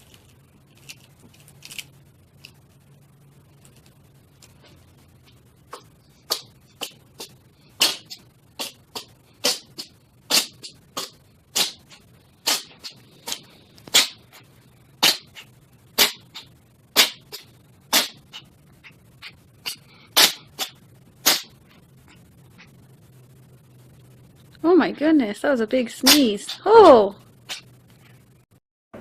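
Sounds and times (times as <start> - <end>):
cat sneezing: 5.7 - 14.2, 15.0 - 18.4, 19.6 - 21.5.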